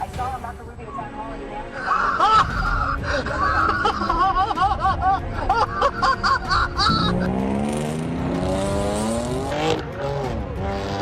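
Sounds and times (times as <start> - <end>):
car engine revving up: 6.8 - 11.0.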